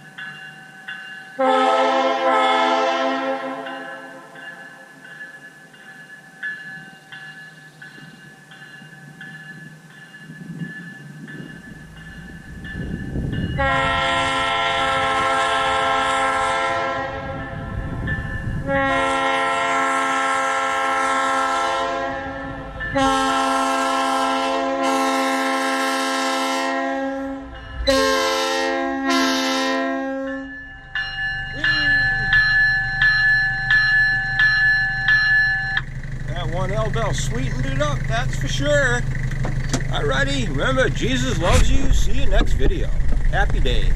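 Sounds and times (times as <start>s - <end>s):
locomotive bell ringing: 0.0s - 43.9s
low train rumble: 0.0s - 43.9s
locomotive air horn chord: 1.4s - 4.4s, 13.5s - 30.6s.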